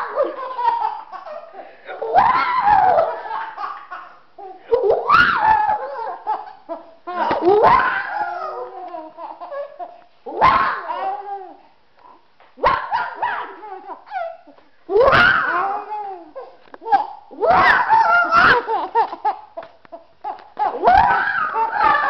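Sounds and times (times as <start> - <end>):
baby laughing: 0.0 - 7.6, 8.2 - 10.0, 15.5 - 22.0
baby yelping: 2.0 - 11.6, 12.6 - 19.4, 20.2 - 22.0.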